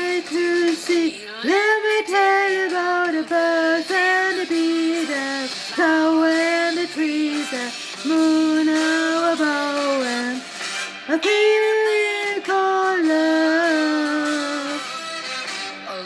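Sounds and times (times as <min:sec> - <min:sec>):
high voice singing: 0:00.0 - 0:10.5, 0:11.1 - 0:16.0.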